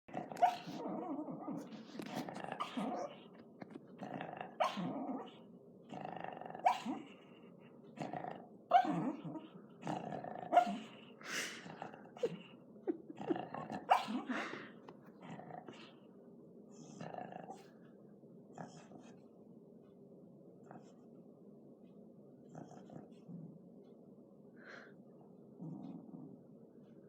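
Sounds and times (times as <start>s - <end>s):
dog snoring: 5.9s - 7.3s, 8.0s - 12.5s, 16.7s - 17.8s, 18.5s - 19.2s, 20.6s - 21.0s, 22.5s - 23.6s.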